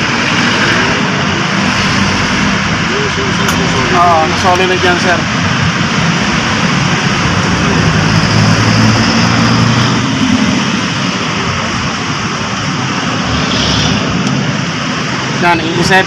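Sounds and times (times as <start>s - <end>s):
loud mechanical drone: 0.0s - 16.0s.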